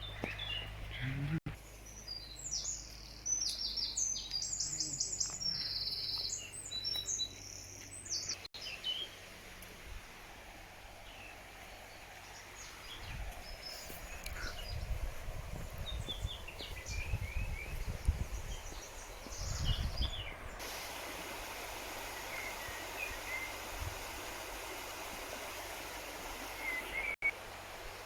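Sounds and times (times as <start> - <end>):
small birds chirping: 0.0 - 9.7, 11.0 - 20.6, 21.8 - 23.7, 25.6 - 27.3
wind buffeting microphone: 14.3 - 20.6
river water rushing: 20.4 - 28.0.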